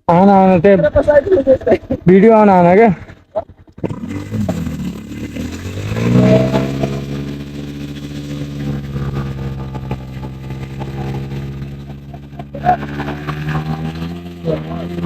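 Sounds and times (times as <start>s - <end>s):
motorcycle engine revving: 0.1s - 15.0s.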